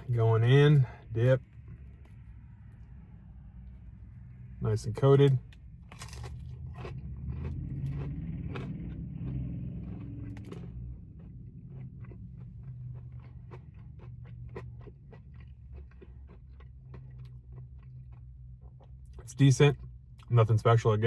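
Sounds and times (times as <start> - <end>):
steady low hum: 0.0 - 21.0
crunchy bites: 5.3 - 19.2
chewing: 5.5 - 20.3.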